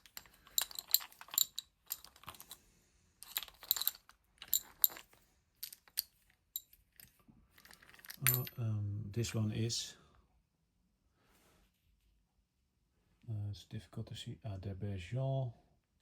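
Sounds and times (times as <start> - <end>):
metal hand tools clinking: 0.0 - 2.6, 3.2 - 6.8, 7.6 - 8.6.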